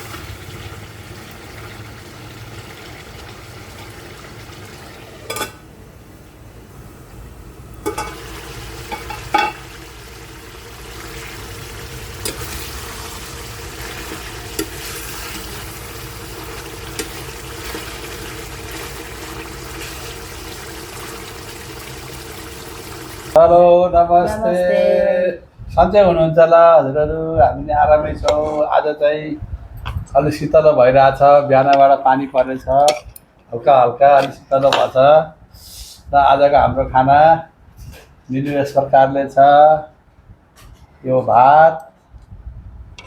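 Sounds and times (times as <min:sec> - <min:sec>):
curry sizzling in a pan: 0:00.0 - 0:05.5, 0:07.8 - 0:23.4.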